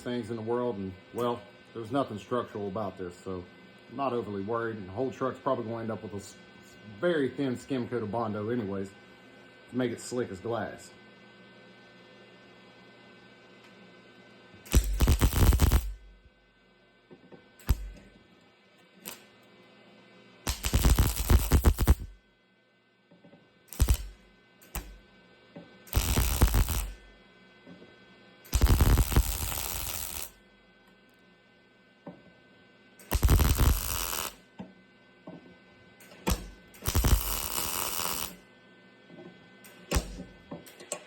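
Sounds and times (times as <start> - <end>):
steady hum: 0.0 - 41.0
arc welder crackle: 14.6 - 16.3, 17.5 - 19.4, 20.4 - 22.3, 23.5 - 25.2, 25.8 - 27.2, 28.5 - 31.0, 33.0 - 34.5, 36.0 - 38.4, 39.6 - 40.8.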